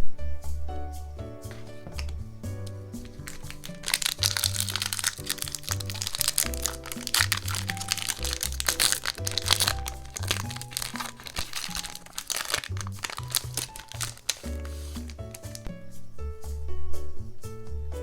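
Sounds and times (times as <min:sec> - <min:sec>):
light background music: 0:00.0 - 0:18.0
foil wrappers crinkling: 0:03.0 - 0:15.7.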